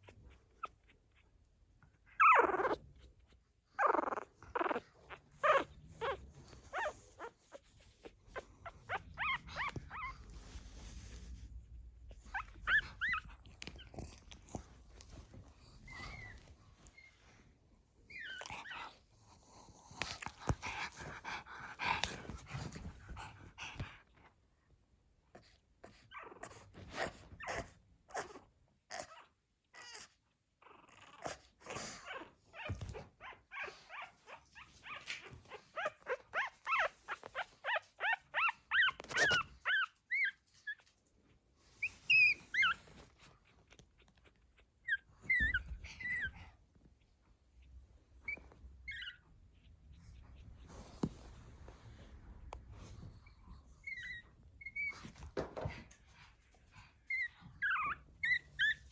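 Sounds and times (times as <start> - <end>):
puppy whimpering and squeaking: 0.0 - 10.6, 12.1 - 17.2, 18.0 - 19.0, 25.9 - 41.0, 41.7 - 46.6, 47.6 - 51.4, 52.8 - 55.7, 56.4 - 58.9.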